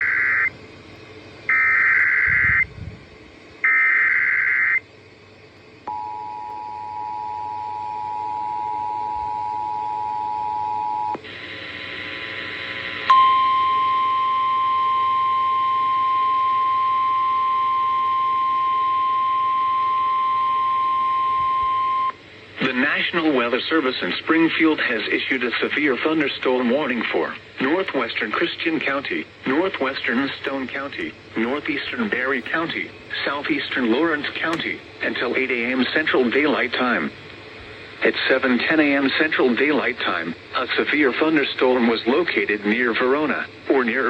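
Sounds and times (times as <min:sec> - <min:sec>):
radio hiss: 0:00.0 - 0:00.6, 0:01.4 - 0:02.7, 0:11.1 - 0:13.1, 0:22.1 - 0:44.0
warbling data bursts: 0:01.5 - 0:02.7
single-pitch alarm tone: 0:05.9 - 0:11.2, 0:13.1 - 0:22.1.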